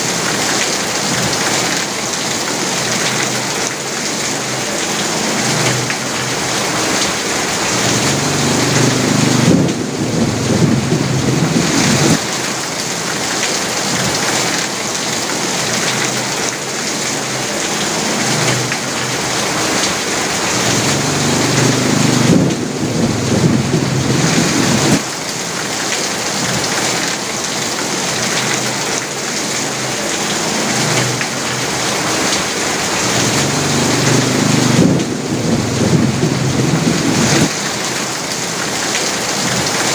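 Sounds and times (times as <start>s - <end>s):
heavy rain on a roof: 0.0s - 39.9s
low rumble: 7.9s - 12.2s, 20.6s - 25.0s, 34.7s - 37.3s.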